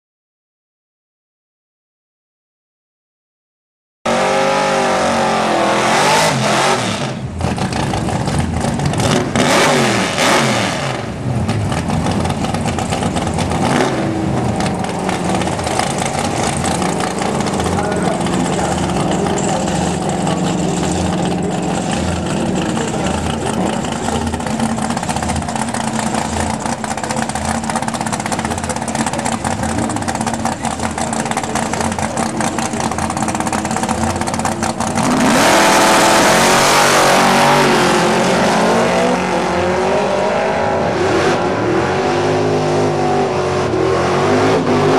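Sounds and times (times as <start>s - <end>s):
car engines revving: 4.1s - 44.9s
voices: 14.6s - 34.8s.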